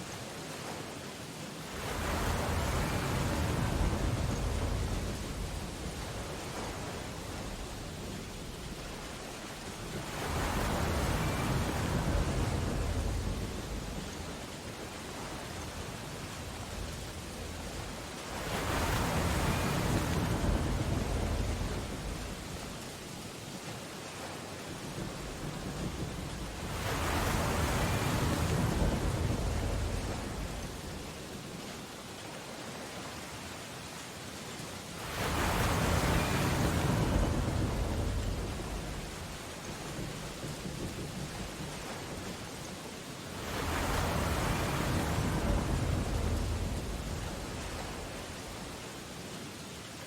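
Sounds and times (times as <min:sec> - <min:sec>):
rain on window glass: 0:37.1 - 0:43.1.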